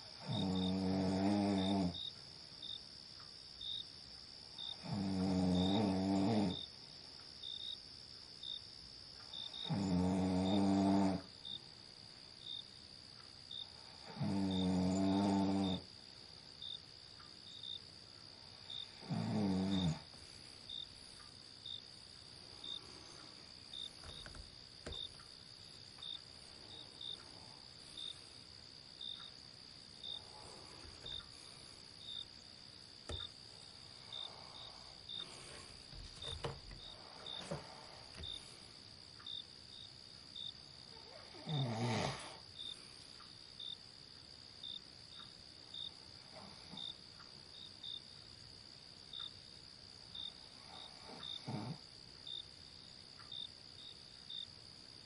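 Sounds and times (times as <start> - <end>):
night insects trilling: 0.0 - 55.0
loud snore: 0.2 - 2.0, 4.8 - 6.7, 9.6 - 11.3, 14.0 - 15.9, 18.9 - 20.1, 41.0 - 42.4, 50.8 - 51.8
person breathing faintly: 22.4 - 23.8, 33.8 - 38.9.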